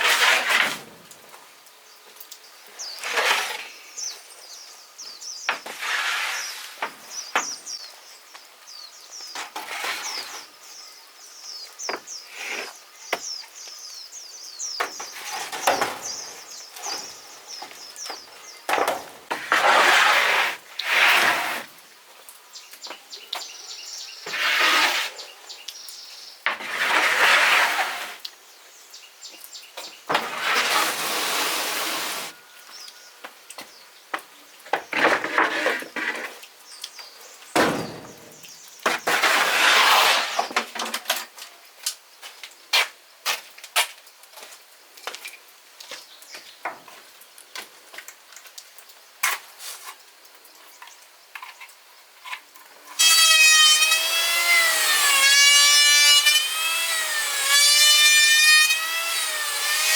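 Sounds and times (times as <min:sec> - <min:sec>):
scraping rasping on wood: 0:00.0 - 0:00.8, 0:05.6 - 0:06.9, 0:19.3 - 0:21.6, 0:24.3 - 0:25.3, 0:26.6 - 0:28.2, 0:30.2 - 0:32.3, 0:39.0 - 0:40.5, 0:53.0 - 0:59.9.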